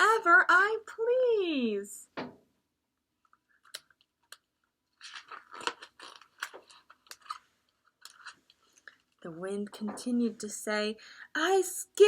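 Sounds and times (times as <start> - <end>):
crinkling crunching clicks: 3.2 - 9.2.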